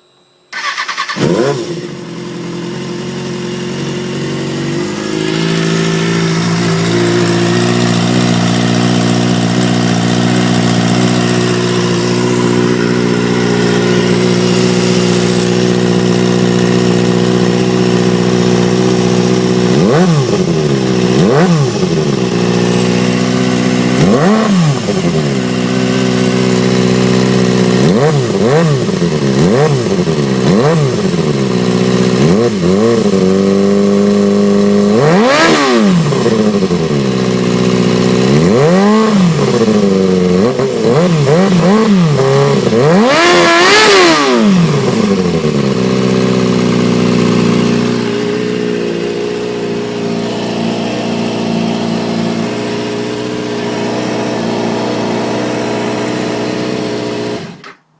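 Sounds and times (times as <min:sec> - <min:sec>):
engine throttle blips: 0:00.0 - 0:33.4
motorcycle engine idling: 0:00.5 - 0:57.8.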